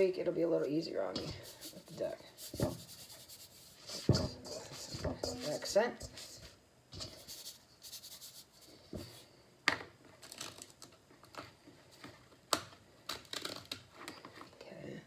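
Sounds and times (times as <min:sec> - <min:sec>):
seasoning shaker spurts: 0:01.2 - 0:09.2.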